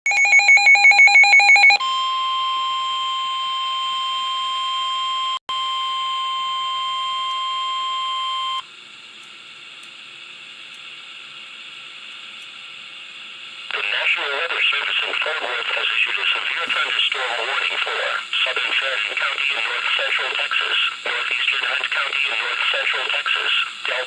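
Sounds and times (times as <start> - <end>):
faint broadcast hiss: 13.7 - 24.0.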